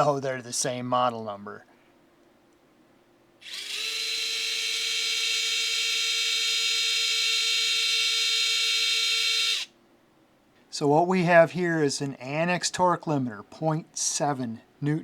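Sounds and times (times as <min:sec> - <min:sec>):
electric screwdriver whine: 0:03.4 - 0:09.7.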